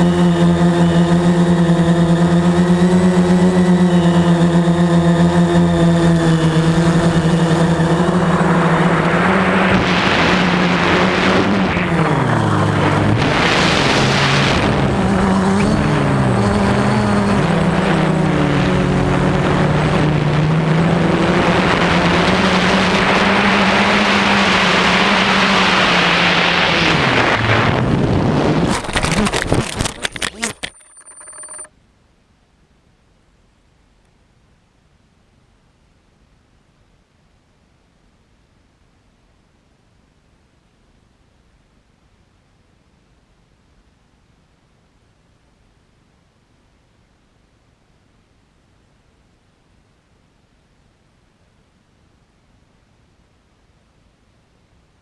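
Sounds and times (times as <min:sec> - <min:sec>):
drone motors whining: 0:00.0 - 0:24.0.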